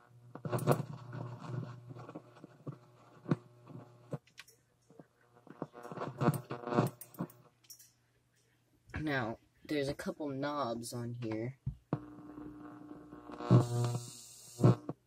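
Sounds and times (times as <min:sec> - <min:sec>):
crackling buzzes: 0:00.0 - 0:07.6, 0:11.8 - 0:15.0
low amplifier hum: 0:05.0 - 0:07.6, 0:10.5 - 0:15.0.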